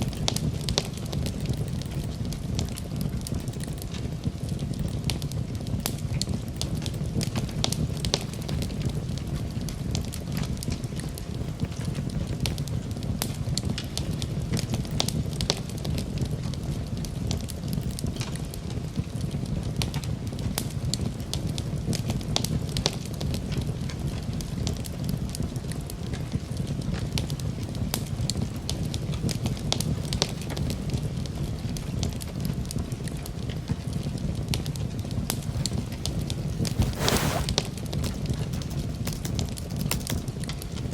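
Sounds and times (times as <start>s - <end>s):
campfire flames rumbling: 0.0s - 40.9s
wood crackling and popping: 0.0s - 40.9s.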